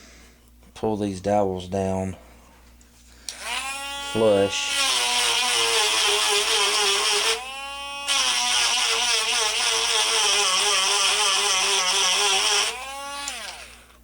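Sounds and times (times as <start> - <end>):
rotary tool sanding wood: 3.3 - 13.8.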